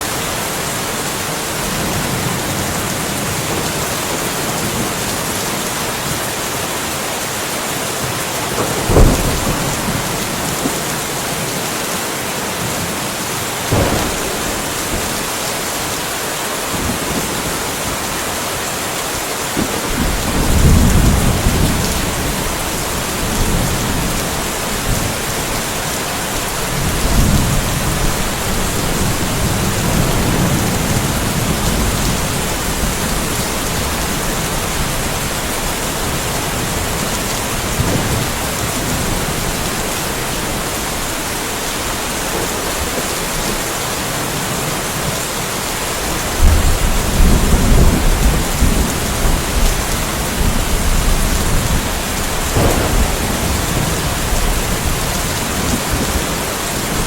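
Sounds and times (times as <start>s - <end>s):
steady rain falling: 0.0s - 57.0s
low rolling thunder: 8.5s - 11.6s, 13.6s - 18.2s, 19.6s - 43.8s, 46.3s - 57.0s
thunder crack: 8.6s - 11.0s, 13.7s - 17.8s, 19.6s - 25.2s, 26.7s - 33.9s, 50.4s - 56.3s.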